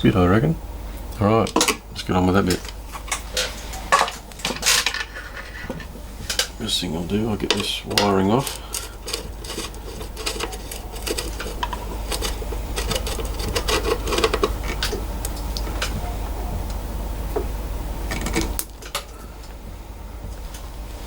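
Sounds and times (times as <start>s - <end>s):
steady low hum: 0.0s - 21.0s
screwdriver and screws rattling: 7.5s - 15.0s.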